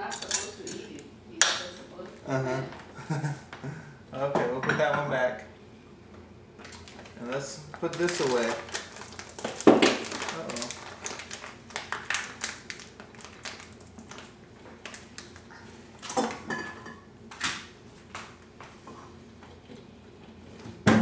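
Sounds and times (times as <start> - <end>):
kitchen objects clicking and clattering: 0.0 - 0.8.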